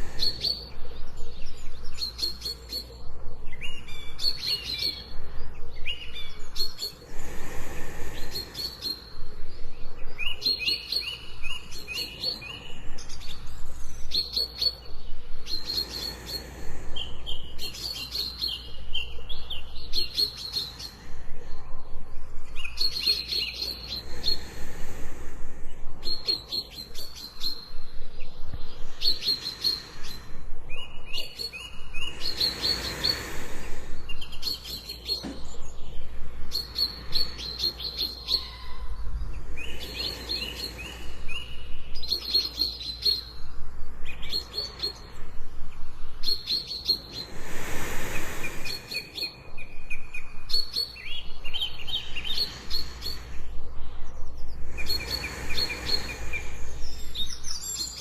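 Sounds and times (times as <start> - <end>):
birds chirping in trills: 0.0 - 58.0
soft rushing swells: 23.8 - 31.1, 31.8 - 34.7, 43.2 - 50.4, 51.3 - 57.8.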